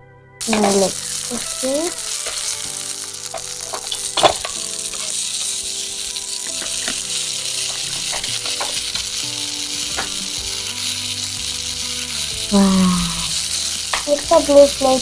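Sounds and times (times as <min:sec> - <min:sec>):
frying sizzle: 0:00.4 - 0:15.0.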